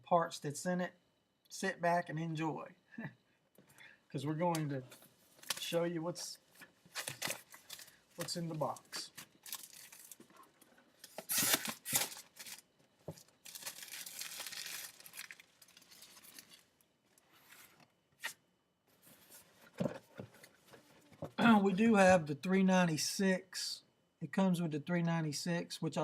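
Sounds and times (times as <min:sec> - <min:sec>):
packaging tearing: 0:09.4 - 0:10.2, 0:11.2 - 0:12.6, 0:13.4 - 0:16.7.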